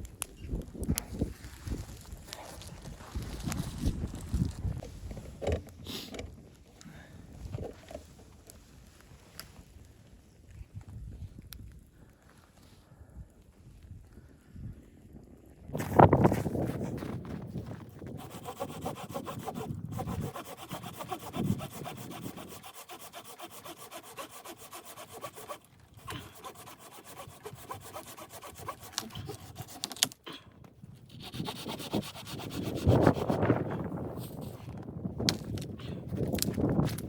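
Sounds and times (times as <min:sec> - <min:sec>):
hand saw cutting wood: 0:18.0 - 0:30.3, 0:31.1 - 0:34.5.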